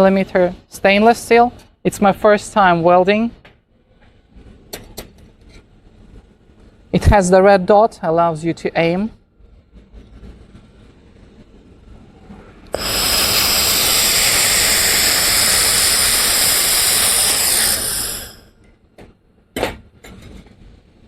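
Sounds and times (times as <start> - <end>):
laser welder hissing and whining: 12.7 - 18.6.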